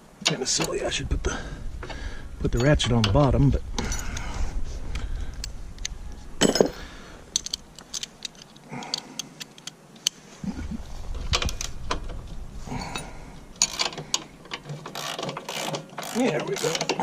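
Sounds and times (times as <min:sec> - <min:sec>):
ratchet wrench clicks: 0:13.6 - 0:14.2, 0:14.9 - 0:17.0.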